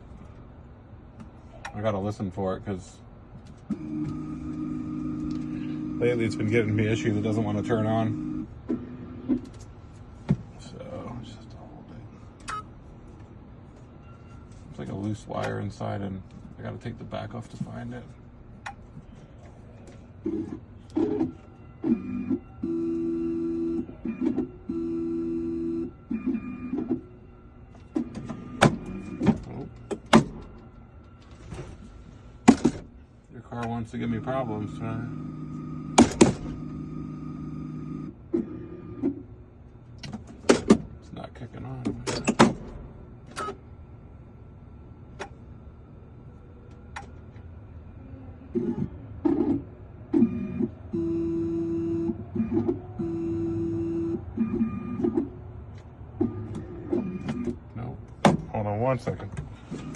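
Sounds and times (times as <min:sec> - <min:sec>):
faint steady hum: 0:00.0 - 0:40.1, 0:50.2 - 0:59.9
machine motor humming: 0:03.7 - 0:08.5, 0:34.0 - 0:38.1.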